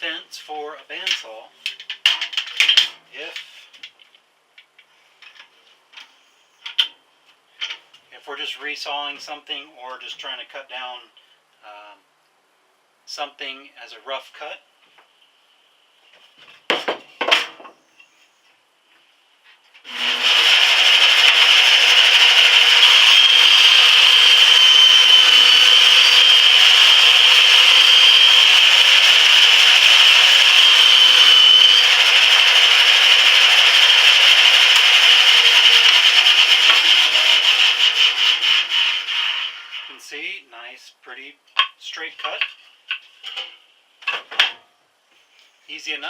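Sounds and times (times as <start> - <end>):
bandsaw cutting wood: 19.9 - 40.0.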